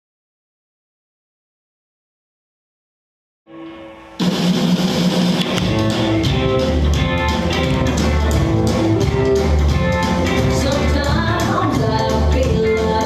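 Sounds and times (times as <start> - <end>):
instrumental band music: 3.7 - 12.8
deep bass part: 5.4 - 10.7.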